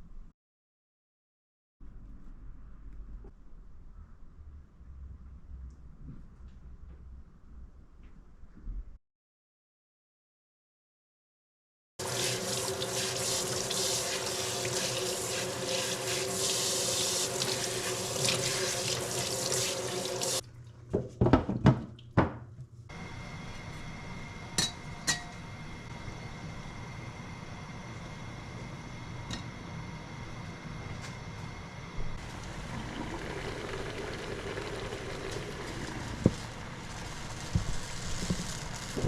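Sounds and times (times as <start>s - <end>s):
water running from tap: 12.0s - 20.4s, 32.2s - 39.0s.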